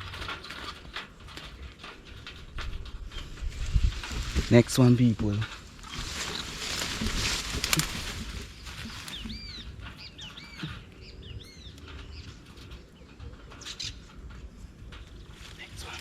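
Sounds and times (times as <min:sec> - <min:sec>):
bird wings flapping: 0:00.0 - 0:10.9.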